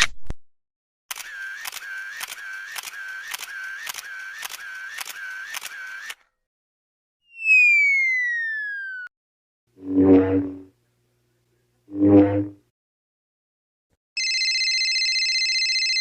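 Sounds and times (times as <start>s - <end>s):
camera shutter clicks: 1.1s - 6.2s.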